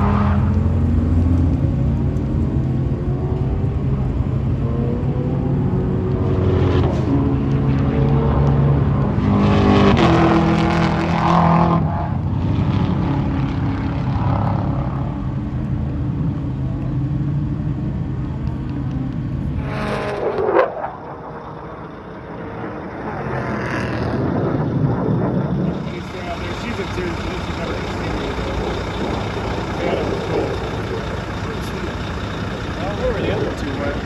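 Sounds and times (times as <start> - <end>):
jet engines roaring: 0.0 - 34.0
jet whine sweeping downward: 17.3 - 34.0.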